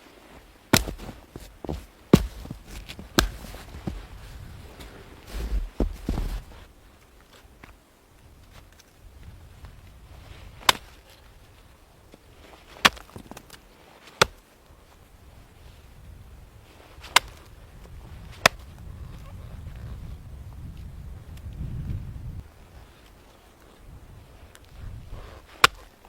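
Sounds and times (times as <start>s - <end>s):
axe chopping wood: 0.7s - 4.1s, 10.6s - 11.0s, 12.8s - 13.5s, 14.2s - 14.4s, 17.1s - 17.4s, 25.6s - 25.9s
wind rumble: 0.9s - 6.7s, 15.2s - 22.8s.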